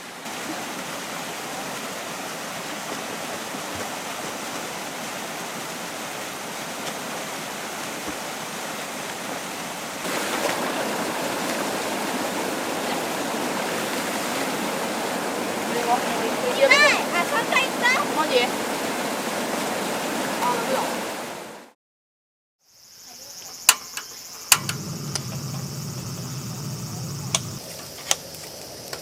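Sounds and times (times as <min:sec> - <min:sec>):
stream rushing over rocks: 0:00.0 - 0:21.8.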